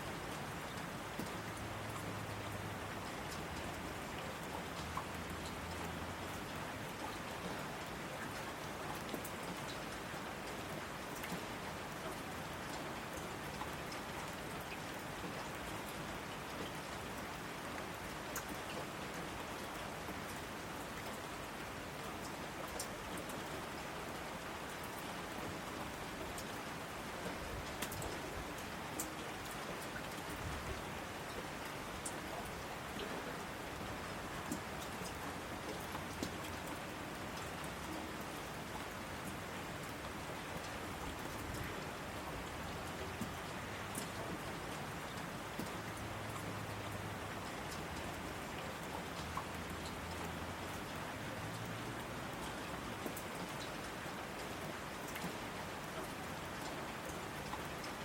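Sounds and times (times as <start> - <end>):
steady rain hiss: 0.0 - 58.0.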